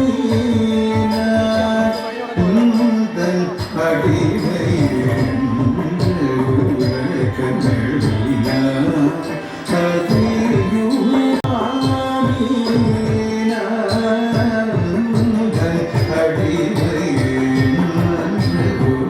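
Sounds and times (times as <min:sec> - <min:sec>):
person singing melody: 0:00.0 - 0:19.0
hand drum beat: 0:03.6 - 0:08.7, 0:10.1 - 0:13.4, 0:14.3 - 0:19.0.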